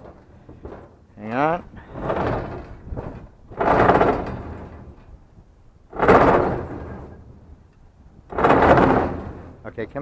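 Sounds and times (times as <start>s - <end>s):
heavy scrap metal scraping: 0.0s - 5.2s, 5.9s - 7.3s, 8.3s - 9.6s.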